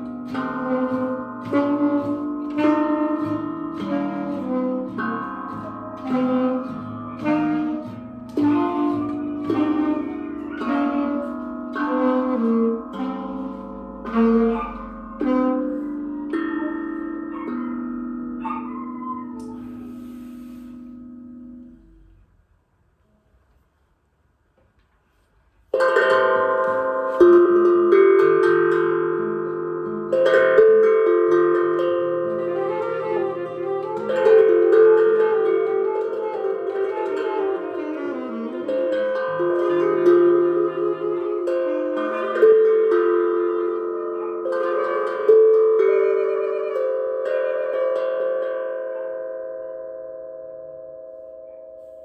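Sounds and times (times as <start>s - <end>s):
bell-like instruments ringing: 0.0s - 21.9s
improvised instrumental music: 0.0s - 22.1s, 25.8s - 49.7s.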